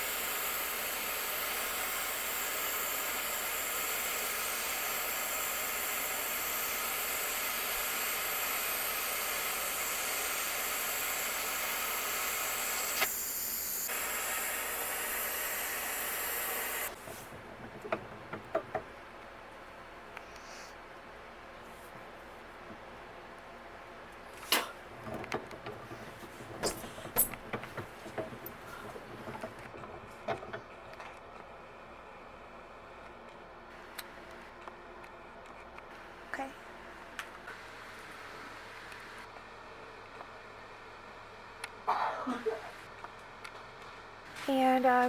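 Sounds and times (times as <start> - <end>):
torch flame hissing: 0.0 - 17.8.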